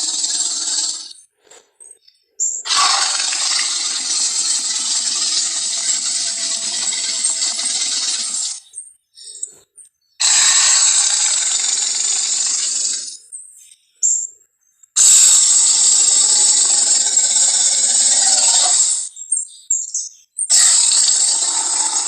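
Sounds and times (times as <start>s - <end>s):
monster rasping calls: 2.7s - 7.9s, 10.2s - 11.8s.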